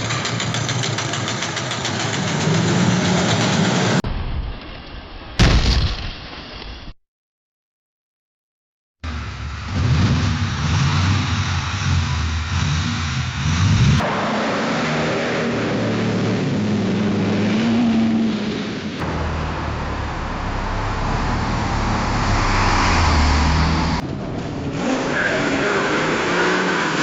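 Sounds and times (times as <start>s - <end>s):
car engines running: 0.0s - 4.0s, 9.0s - 27.0s
cars driving by: 9.0s - 27.0s.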